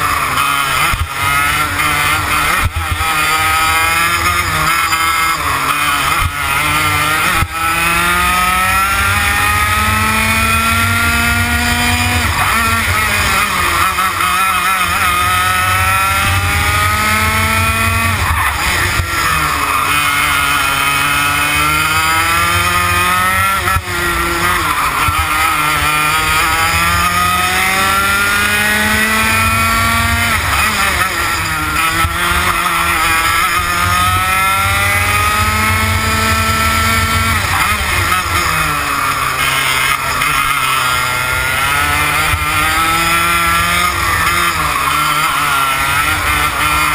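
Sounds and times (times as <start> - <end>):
kart engine running hard: 0.0 - 46.9.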